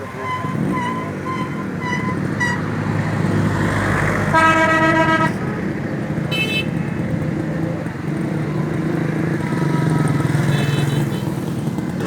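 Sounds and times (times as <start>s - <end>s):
shrill horn toot: 0.0s - 2.8s
vehicle horn honking: 0.0s - 2.8s, 4.3s - 5.5s, 6.3s - 6.8s, 10.4s - 11.4s.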